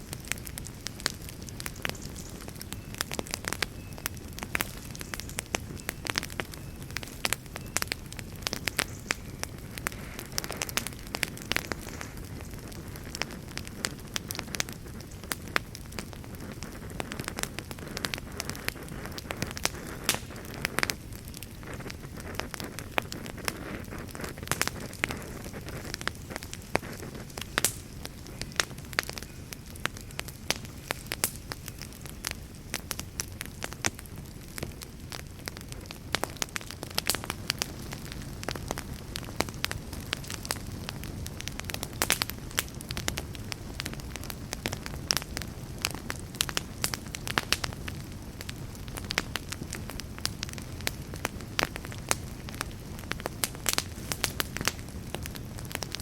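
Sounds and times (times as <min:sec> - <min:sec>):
burning wood crackling and popping: 0:00.0 - 0:56.0
rumble of fire flames: 0:00.0 - 0:56.0.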